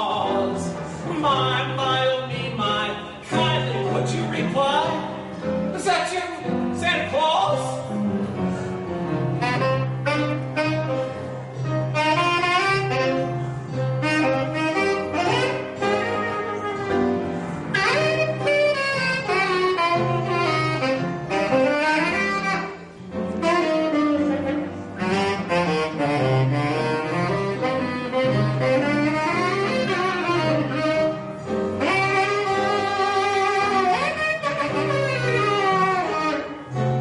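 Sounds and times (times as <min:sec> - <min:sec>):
horns playing melody: 0:09.2 - 0:37.0.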